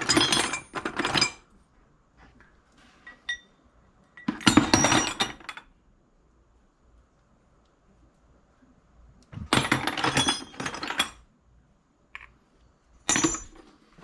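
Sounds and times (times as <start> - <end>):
scrap metal pieces clattering: 13.1 - 13.8.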